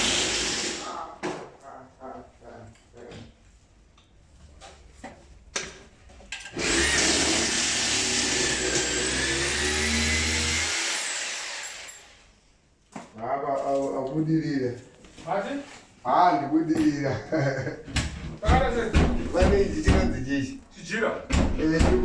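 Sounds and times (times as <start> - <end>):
power tool motor whining: 6.6 - 12.1.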